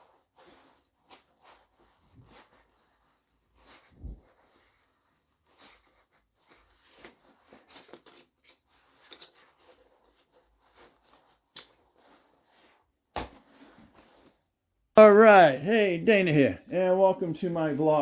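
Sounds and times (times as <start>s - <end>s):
faint small clicks and rustles: 0.0s - 12.9s.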